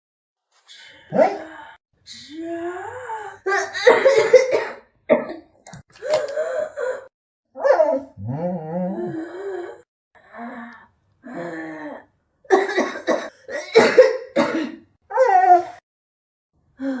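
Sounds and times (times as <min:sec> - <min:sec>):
person coughing: 0:03.6 - 0:05.5, 0:12.5 - 0:14.9
groaning throat sounds: 0:06.0 - 0:12.1.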